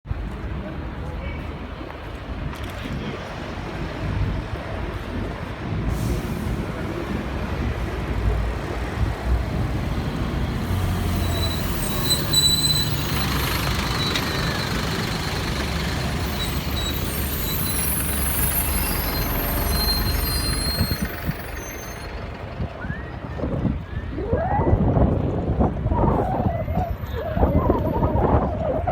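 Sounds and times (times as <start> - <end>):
buses and trucks passing: 0.1 - 28.9
high brake squeal: 5.9 - 7.0, 10.5 - 24.2.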